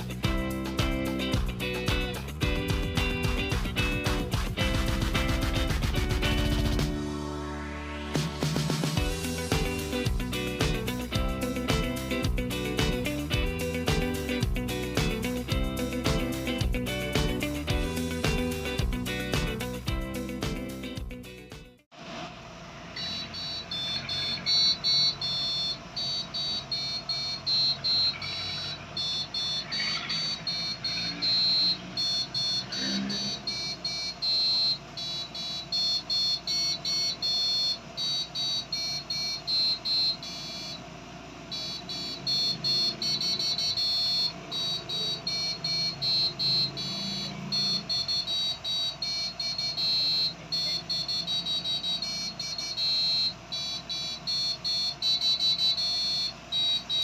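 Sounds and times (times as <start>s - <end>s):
buzzer playing beeping tune: 0.0s - 7.0s, 9.0s - 21.0s, 23.0s - 40.8s, 41.5s - 57.0s.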